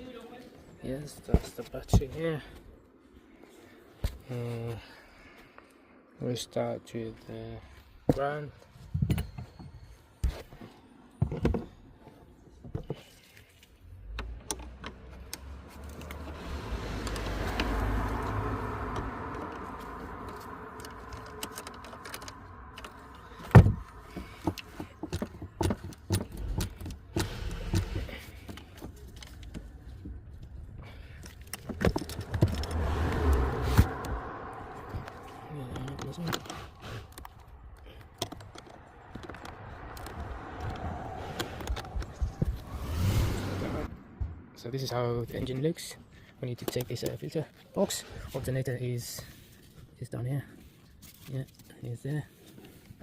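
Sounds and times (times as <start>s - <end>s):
steady low rumble: 16.4s - 46.0s.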